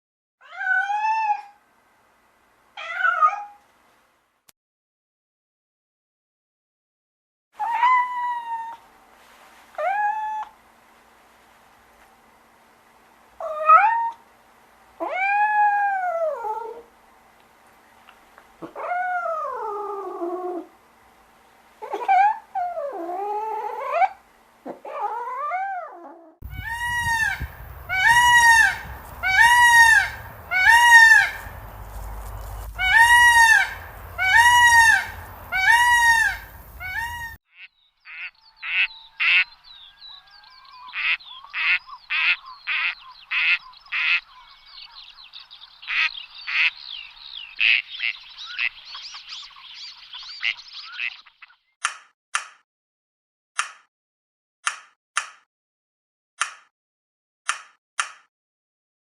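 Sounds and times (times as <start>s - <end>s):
waterfowl calling: 26.4s - 51.6s
loud honking call: 26.5s - 39.6s.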